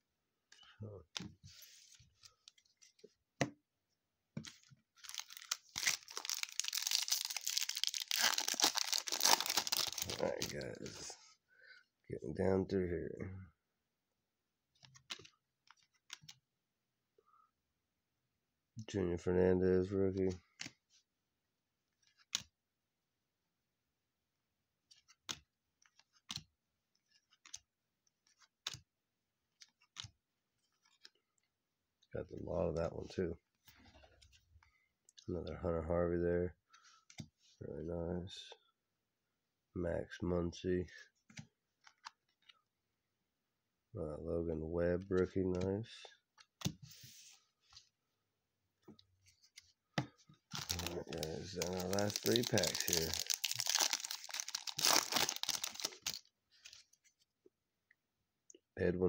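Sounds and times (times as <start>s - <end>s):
foil wrapper crinkling and tearing: 5.0s - 10.7s, 50.5s - 56.3s
cards being flicked through: 50.0s - 56.2s.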